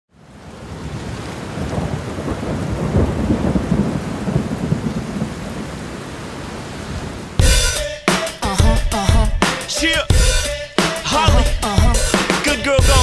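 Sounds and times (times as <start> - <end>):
steady rain: 0.1 - 7.4
thunder rumbling: 0.7 - 5.8.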